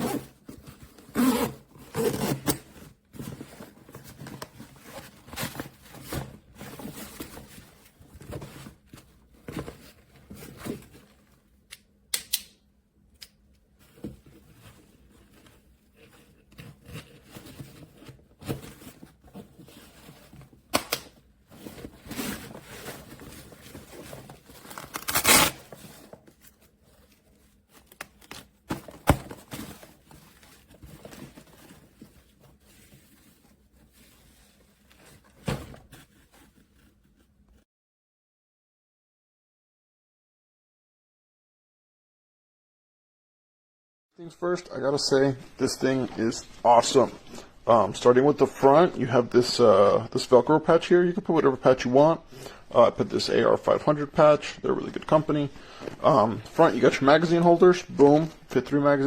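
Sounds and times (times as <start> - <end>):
bag rustling and scraping: 0.0 - 11.0, 21.3 - 27.9
loud tearing rasp: 24.8 - 25.8.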